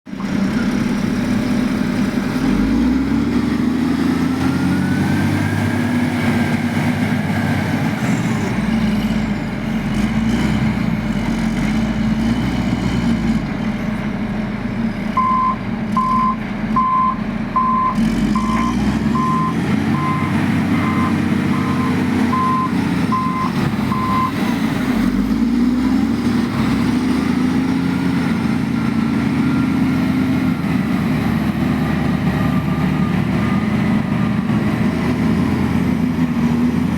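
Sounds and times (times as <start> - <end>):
diesel truck engine revving: 0.1 - 36.9
reversing alarm beeping: 15.2 - 24.4.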